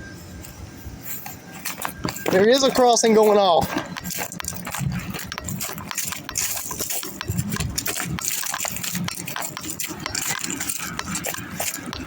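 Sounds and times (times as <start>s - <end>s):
distant railroad crossing bell: 0.0s - 12.0s
clicks and crunches: 3.6s - 12.0s.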